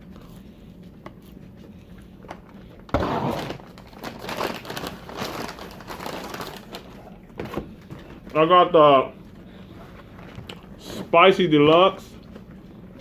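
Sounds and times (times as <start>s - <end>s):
paper packaging rustling: 2.9s - 7.2s.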